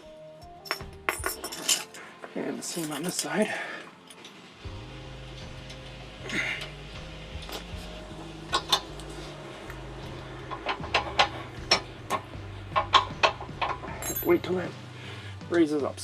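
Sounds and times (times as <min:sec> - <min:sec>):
metal hardware clinking: 0:00.4 - 0:02.0, 0:02.6 - 0:03.3, 0:07.4 - 0:07.9, 0:08.5 - 0:09.8, 0:10.4 - 0:14.7
low droning hum: 0:04.6 - 0:16.0.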